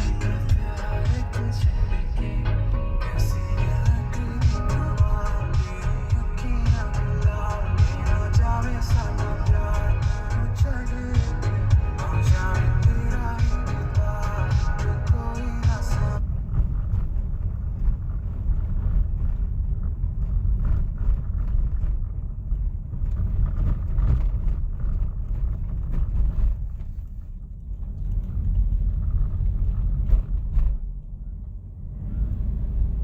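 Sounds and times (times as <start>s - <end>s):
vehicle rumble: 0.0s - 33.0s.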